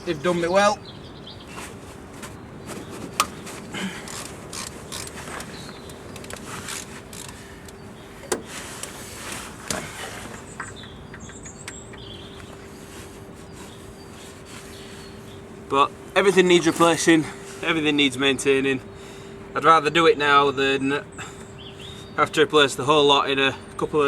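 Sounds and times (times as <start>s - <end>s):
faint steady hum: 0.0s - 24.0s
metallic clicks and knocks: 8.2s - 9.0s, 10.6s - 12.6s.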